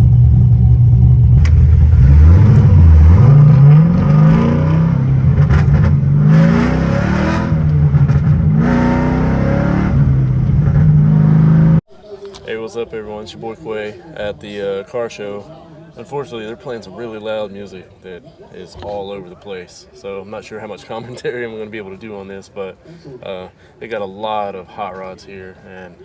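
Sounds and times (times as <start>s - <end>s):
car engine idling and revving: 0.0s - 11.8s.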